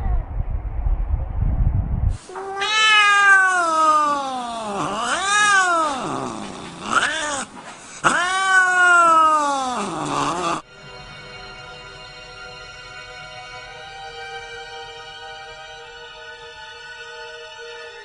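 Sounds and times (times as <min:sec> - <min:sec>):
low rumbling noise: 0:00.0 - 0:02.4
cat yowling: 0:02.2 - 0:10.6.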